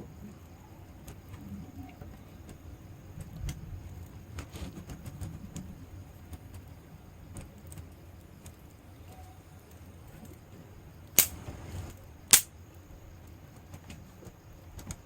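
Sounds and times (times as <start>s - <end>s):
fire crackling and popping: 11.1s - 12.5s.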